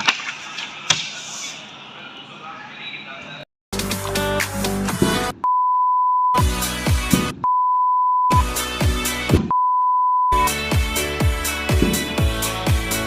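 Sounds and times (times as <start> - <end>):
pop music with bass drum: 3.8 - 5.4, 6.4 - 7.5, 8.3 - 9.6, 10.3 - 13.0
steady beep tone: 5.4 - 6.4, 7.4 - 8.5, 9.5 - 10.6.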